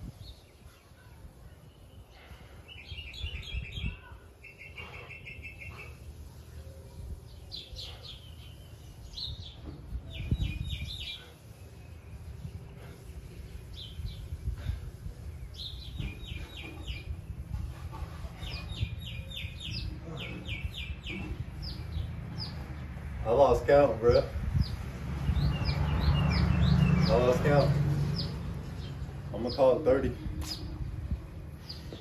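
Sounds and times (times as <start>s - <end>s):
songbirds chirping: 0.0s - 32.0s
steady low rumble: 11.7s - 31.9s.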